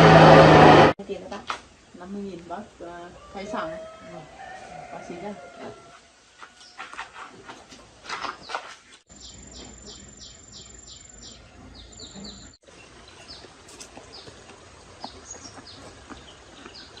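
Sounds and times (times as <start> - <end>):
small birds chirping: 8.4 - 17.0.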